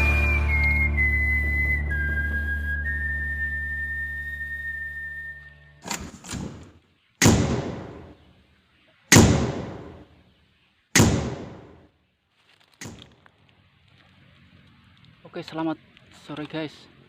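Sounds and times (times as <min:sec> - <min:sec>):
sharp bangs: 0:05.8 - 0:08.3, 0:09.1 - 0:10.2, 0:11.0 - 0:11.9.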